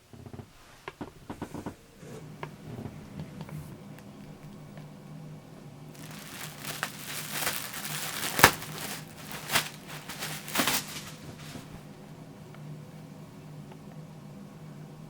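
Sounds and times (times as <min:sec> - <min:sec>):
packaging crinkling and rustling: 0:06.0 - 0:11.7.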